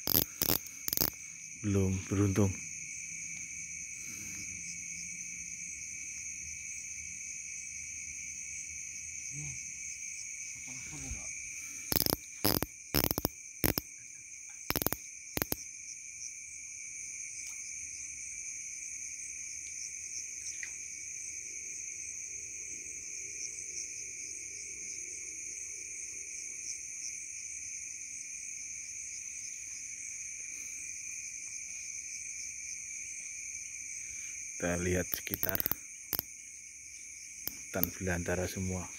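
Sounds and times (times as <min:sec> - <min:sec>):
sharp loud clicks: 0:00.0 - 0:01.2, 0:11.9 - 0:13.8, 0:14.7 - 0:15.6, 0:35.0 - 0:36.3
crickets and insects trilling: 0:00.0 - 0:38.9.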